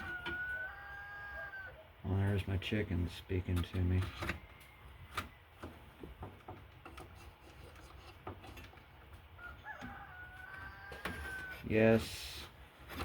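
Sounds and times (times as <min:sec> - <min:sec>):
chicken calling: 0:00.0 - 0:02.0, 0:09.4 - 0:11.7.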